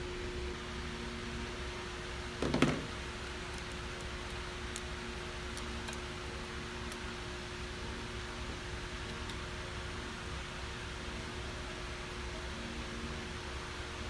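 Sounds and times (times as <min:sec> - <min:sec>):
mechanical hum: 0:00.0 - 0:14.0
knock: 0:02.4 - 0:02.9.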